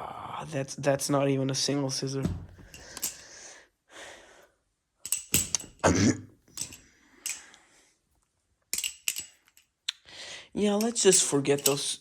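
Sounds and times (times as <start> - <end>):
balisong handles clacking: 2.2 - 3.3, 5.0 - 7.6, 8.7 - 9.8, 10.6 - 12.0.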